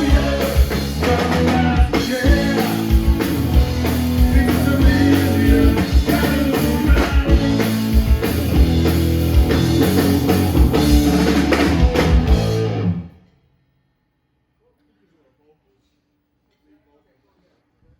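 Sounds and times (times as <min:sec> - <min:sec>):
punk rock band playing live: 0:00.0 - 0:13.1.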